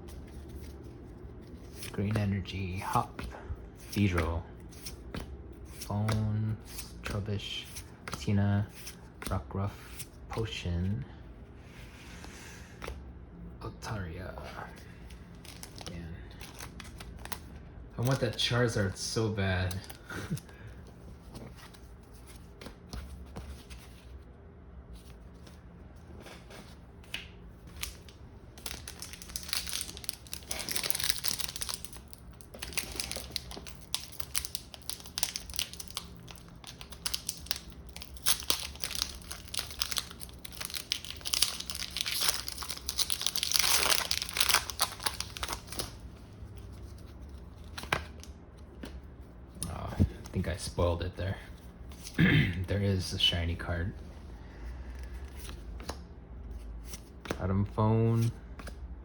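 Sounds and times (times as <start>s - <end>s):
cards being handled: 0.0s - 10.6s, 14.6s - 24.2s, 24.9s - 50.9s, 55.0s - 58.8s
foil wrapper crinkling and tearing: 27.8s - 46.0s.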